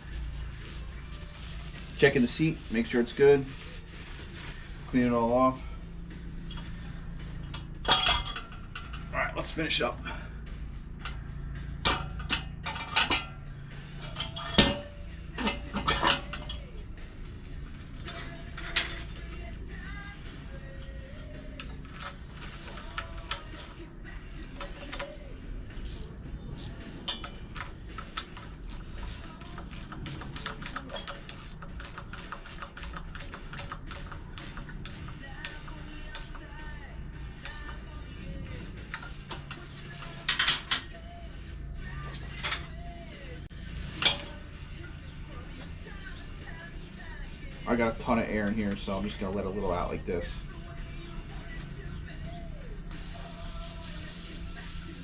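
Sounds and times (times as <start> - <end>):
rock music with singing: 0.0 - 55.0
tools clicking and tapping on wheel: 21.5 - 23.8, 24.4 - 25.2, 25.8 - 36.6, 37.4 - 41.0
air hissing out of tire valve: 52.9 - 55.0.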